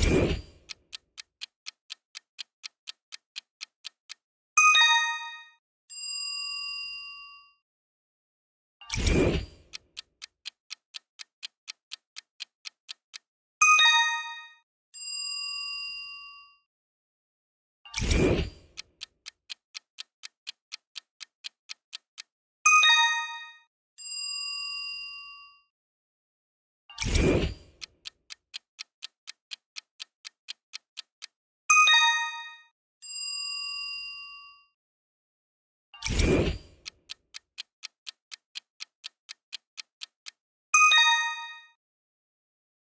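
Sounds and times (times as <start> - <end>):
clock ticking: 0.0 - 5.5, 8.9 - 14.6, 18.0 - 23.6, 27.0 - 32.6, 36.0 - 41.7
soft chime: 4.8 - 7.6, 13.8 - 16.7, 22.8 - 25.7, 31.9 - 34.8, 40.8 - 41.7.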